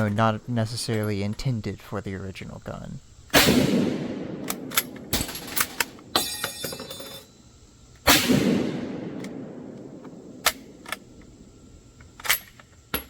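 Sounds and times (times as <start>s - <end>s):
rifle shot echoing: 3.3s - 6.2s, 8.1s - 11.2s
sharp metal clicks: 4.3s - 6.5s, 9.2s - 11.3s
ringing metallic rattle: 4.6s - 7.4s.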